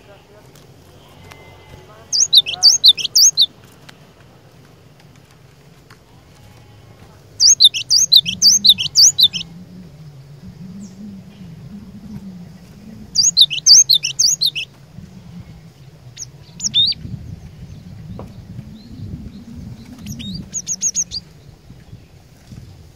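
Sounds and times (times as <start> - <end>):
bird singing high chirps: 2.1 - 3.5, 7.4 - 9.6, 12.5 - 14.7, 15.6 - 21.5.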